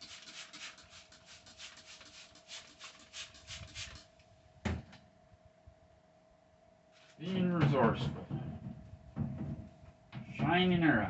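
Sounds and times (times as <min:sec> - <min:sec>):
cloth rubbing a microwave: 0:00.0 - 0:04.1.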